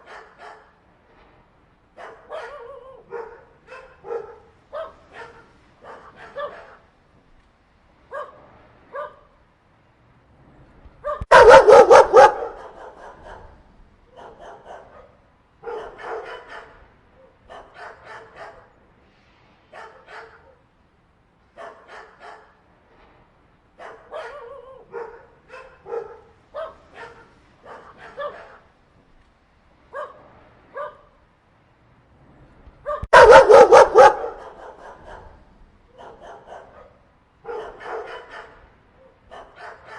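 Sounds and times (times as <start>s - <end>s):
dogs barking: 0.0s - 0.8s, 2.0s - 6.9s, 8.1s - 9.3s, 11.0s - 18.7s, 19.8s - 20.6s, 21.6s - 22.6s, 23.8s - 28.7s, 29.9s - 31.1s, 32.8s - 39.9s.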